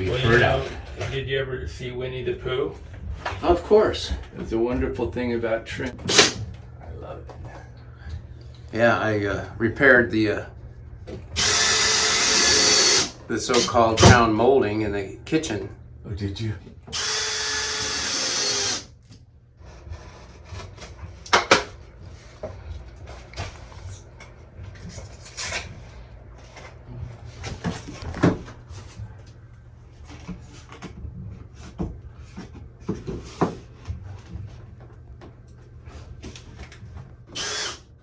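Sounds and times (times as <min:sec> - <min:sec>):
power tool whining: 0:05.9 - 0:06.4, 0:11.3 - 0:14.2, 0:16.9 - 0:18.9, 0:37.3 - 0:37.9.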